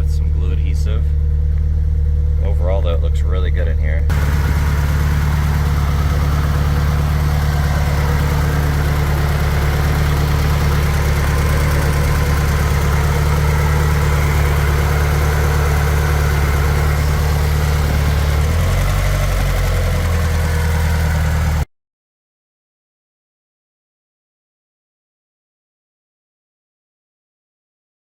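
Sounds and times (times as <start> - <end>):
car engine idling: 0.0 - 21.7.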